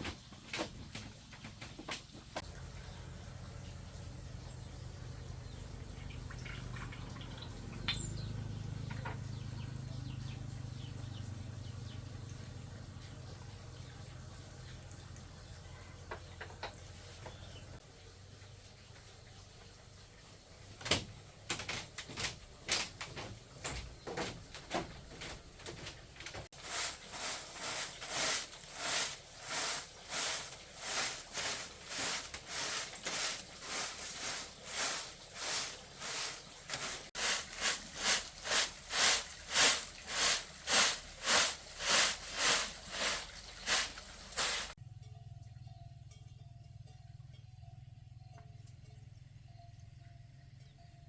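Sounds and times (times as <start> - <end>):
rhythmic rasping strokes: 24.2 - 44.8.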